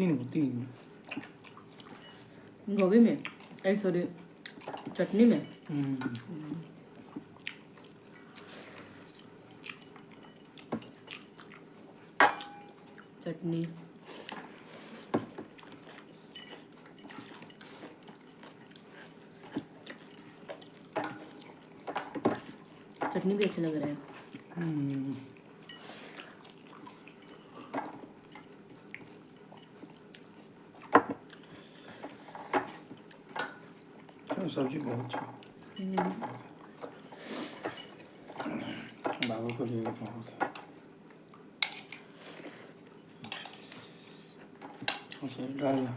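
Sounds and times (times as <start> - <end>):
soft chewing with wet smacks: 0.7 - 12.1, 12.8 - 21.8, 22.5 - 33.9, 40.8 - 45.2
dishes and cutlery clinking: 12.2 - 12.9, 19.1 - 23.2, 43.0 - 43.9.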